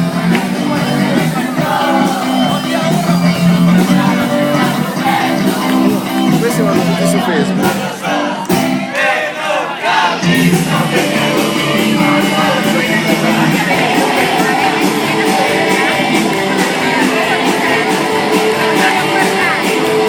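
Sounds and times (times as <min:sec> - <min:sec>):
loud rock music: 0:00.0 - 0:20.0.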